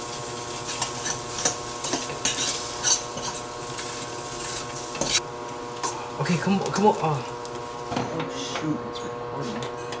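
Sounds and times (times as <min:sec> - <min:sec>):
utensil scraping in a pan: 0:00.0 - 0:05.2.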